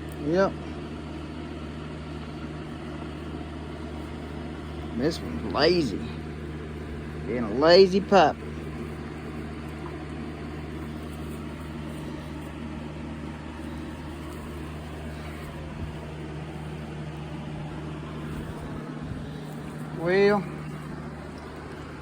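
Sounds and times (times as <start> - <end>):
fan motor hum: 0.0 - 22.0.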